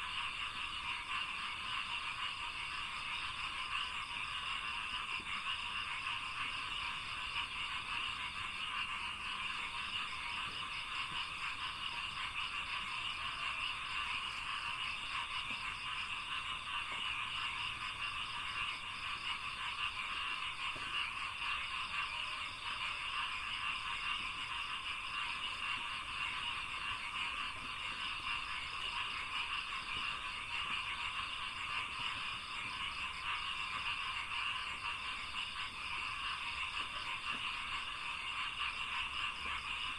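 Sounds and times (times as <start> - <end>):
chorus of frogs calling: 0.0 - 39.9.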